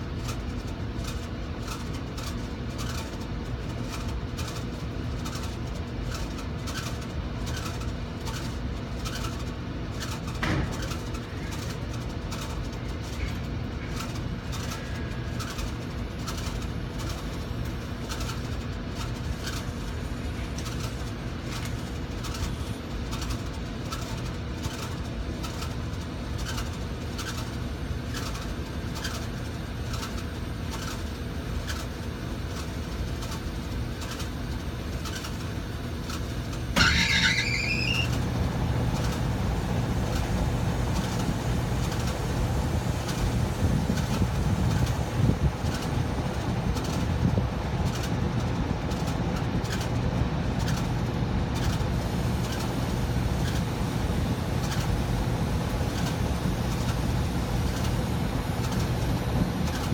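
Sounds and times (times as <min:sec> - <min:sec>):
air conditioner blower squealing: 0:00.0 - 0:59.9
steady hum: 0:35.8 - 0:59.9.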